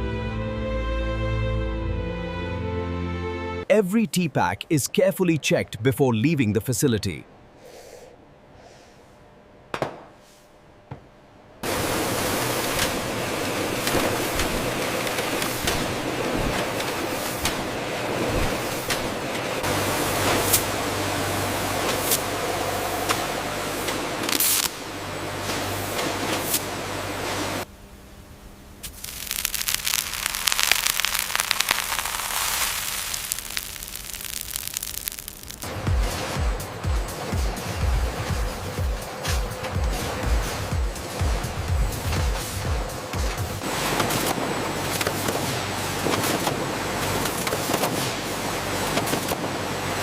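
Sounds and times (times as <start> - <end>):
dense crackling: 28.8 - 35.8
loud even hiss with ticks: 28.8 - 35.8.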